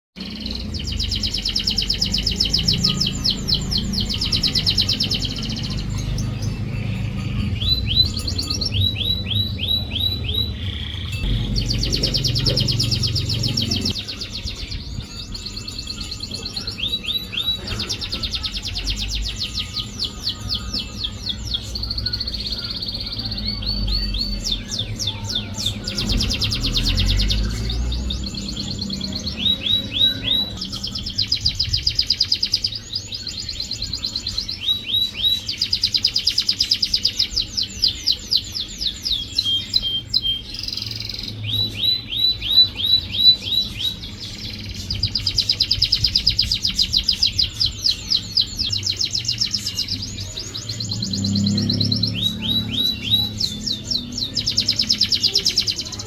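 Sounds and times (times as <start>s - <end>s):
canary song trills and whistles: 0.2s - 56.0s
low rumble: 0.5s - 14.0s.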